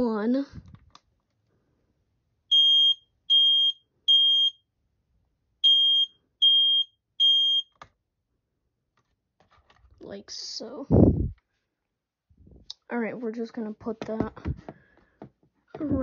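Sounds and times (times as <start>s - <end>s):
smoke alarm beeps: 2.5s - 4.6s, 5.6s - 7.8s.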